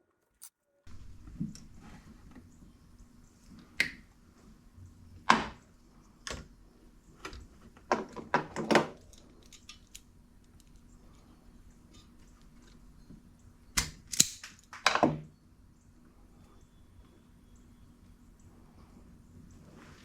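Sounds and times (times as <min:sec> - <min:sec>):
clicks of tools being handled: 0:07.2 - 0:10.8, 0:13.8 - 0:15.0.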